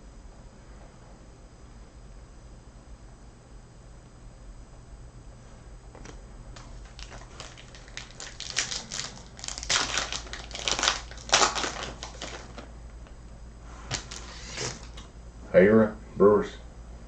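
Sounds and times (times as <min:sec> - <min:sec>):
foil wrapper crinkling: 0:06.6 - 0:12.7, 0:13.9 - 0:15.1.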